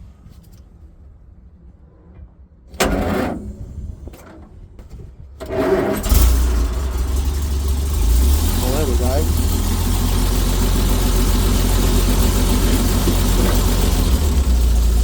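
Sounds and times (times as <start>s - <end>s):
truck engine cranking and starting: 2.7s - 4.5s, 5.4s - 15.0s.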